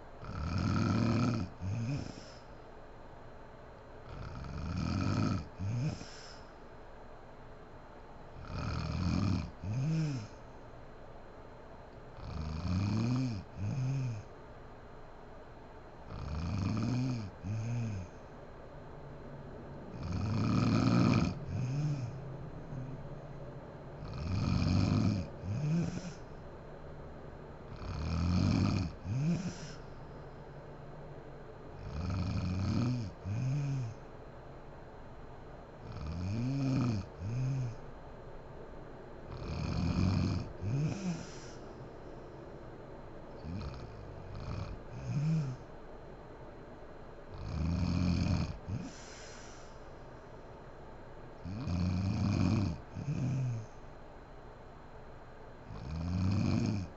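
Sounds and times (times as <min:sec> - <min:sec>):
woman snoring: 0:00.2 - 0:02.4, 0:04.1 - 0:06.5, 0:08.4 - 0:10.4, 0:12.2 - 0:14.3, 0:16.1 - 0:18.2, 0:19.9 - 0:23.0, 0:24.0 - 0:26.4, 0:27.7 - 0:30.2, 0:31.8 - 0:34.1, 0:35.8 - 0:37.8, 0:39.3 - 0:41.7, 0:43.4 - 0:45.7, 0:47.3 - 0:49.7, 0:51.4 - 0:53.8, 0:55.7 - 0:56.9.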